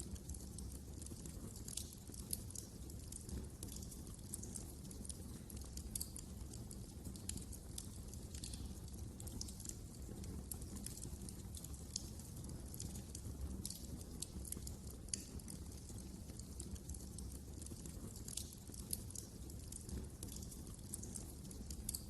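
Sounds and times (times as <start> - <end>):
low rumble of burning: 0.0 - 22.0
wood fire crackling: 0.0 - 22.0.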